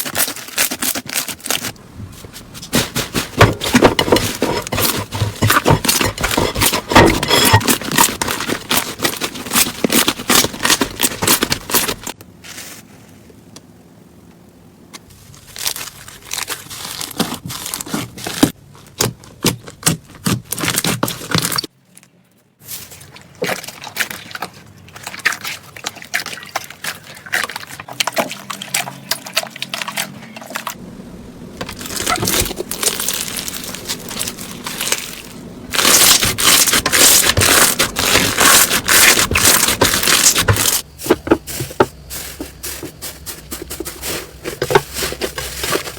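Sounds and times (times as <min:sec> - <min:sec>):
slime crackling and popping: 0:31.6 - 0:40.8.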